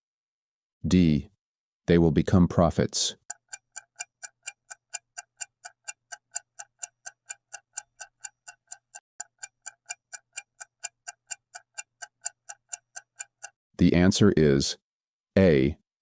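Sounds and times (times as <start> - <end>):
clock ticking: 3.0 - 13.6.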